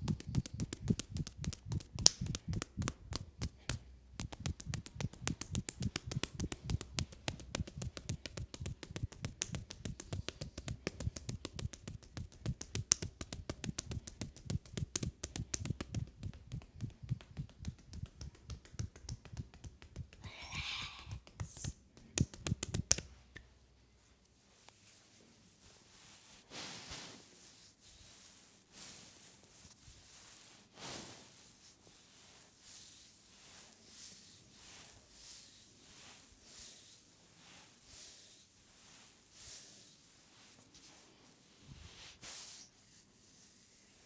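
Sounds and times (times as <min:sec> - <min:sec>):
hands tapping on a leg: 0:00.0 - 0:23.1.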